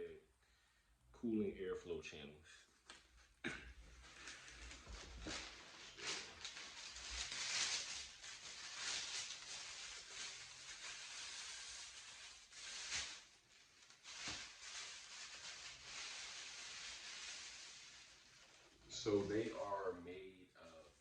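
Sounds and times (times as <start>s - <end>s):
rustling handling noise: 3.0s - 19.7s.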